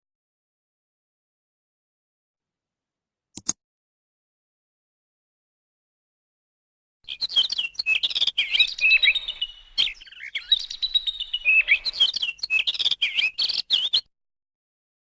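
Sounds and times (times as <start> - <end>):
small birds chirping: 7.0 - 14.1.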